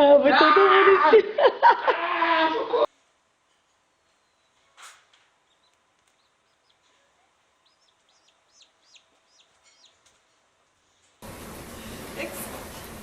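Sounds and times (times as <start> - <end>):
small bird chirping: 4.1 - 10.3.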